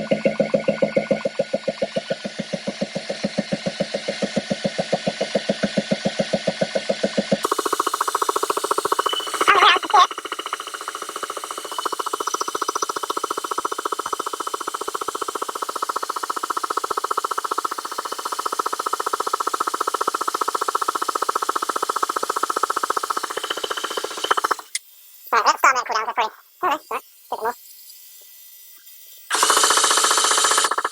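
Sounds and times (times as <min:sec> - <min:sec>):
electric starter motor cranking: 0:29.3 - 0:30.9.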